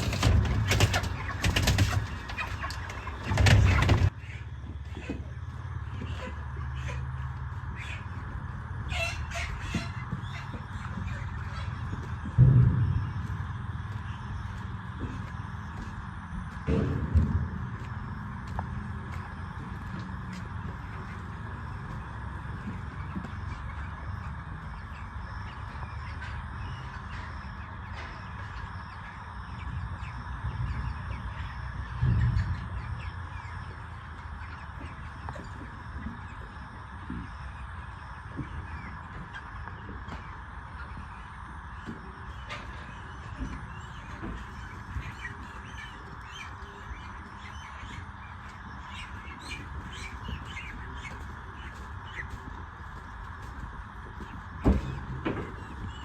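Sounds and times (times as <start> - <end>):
low rumbling handling noise: 0.0 - 4.2, 11.8 - 23.4
chickens squawking: 0.0 - 12.4, 17.6 - 56.0.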